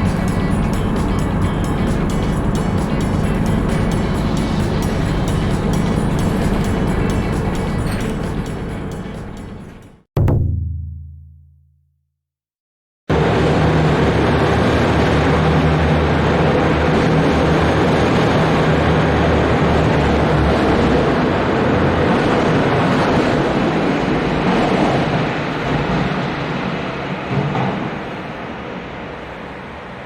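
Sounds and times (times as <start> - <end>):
bus engine hum: 0.0 - 10.0, 13.1 - 30.0
road noise: 0.0 - 10.0.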